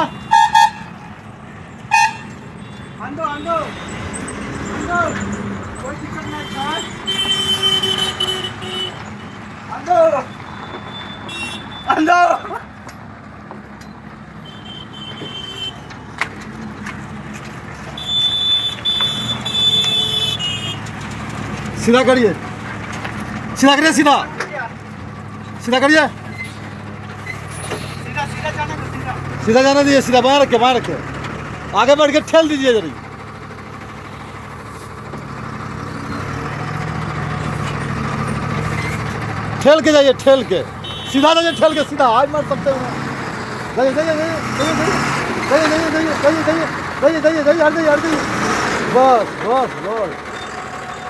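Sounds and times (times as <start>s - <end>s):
truck engine running: 12.8s - 51.0s.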